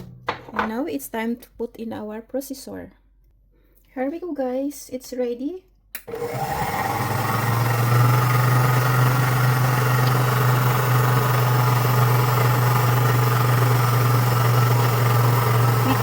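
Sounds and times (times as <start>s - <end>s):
food processor motor humming: 6.0s - 16.0s.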